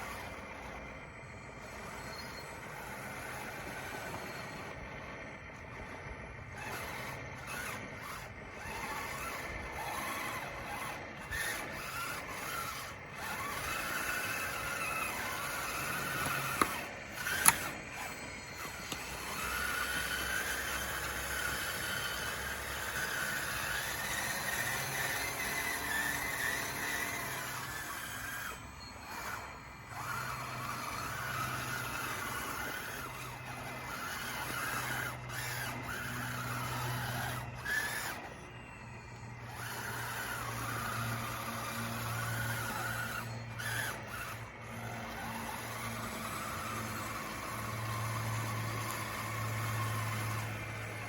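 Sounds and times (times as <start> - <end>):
toy bulldozer motor whining: 0.0 - 51.0
sharp clicks: 8.6 - 38.3.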